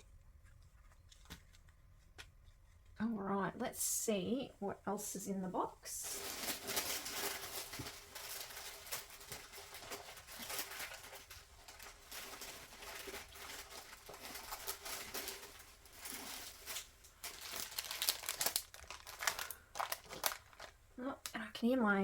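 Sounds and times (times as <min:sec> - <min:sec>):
hands rummaging through box: 0:06.0 - 0:20.8
packaging crinkling and rustling: 0:06.0 - 0:21.5.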